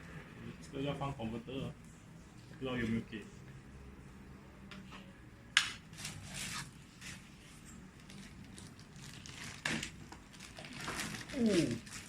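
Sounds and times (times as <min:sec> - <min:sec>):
packaging rustling: 0:08.0 - 0:12.0.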